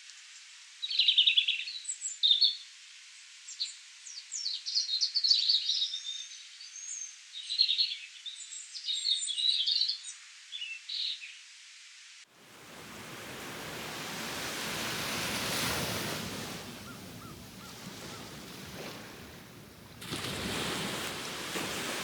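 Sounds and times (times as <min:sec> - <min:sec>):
ocean wave washing in: 0:12.3 - 0:22.0.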